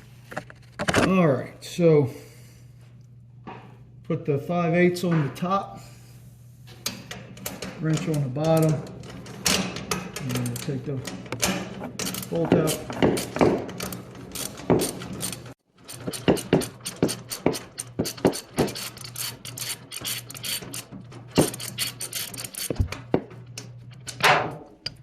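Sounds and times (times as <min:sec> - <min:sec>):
socket ratchet clicking: 0:13.2 - 0:20.8.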